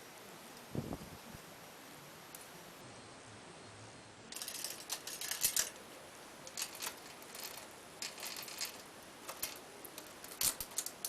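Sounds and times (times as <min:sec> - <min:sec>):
bicycle chain clinking: 0:04.3 - 0:05.8, 0:06.5 - 0:11.0.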